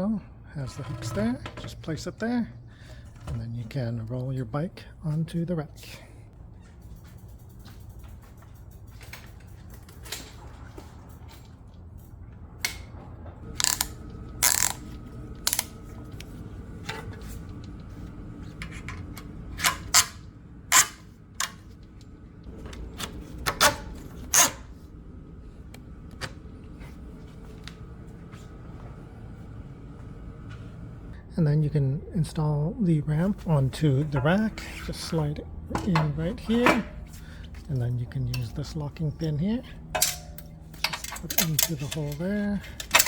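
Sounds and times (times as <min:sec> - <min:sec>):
metal bike rack clanking: 0:13.5 - 0:17.6, 0:39.9 - 0:43.0.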